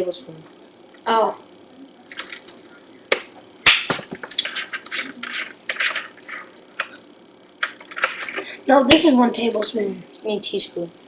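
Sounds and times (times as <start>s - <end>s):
scraping and rustling: 4.0s - 7.0s, 7.6s - 8.5s.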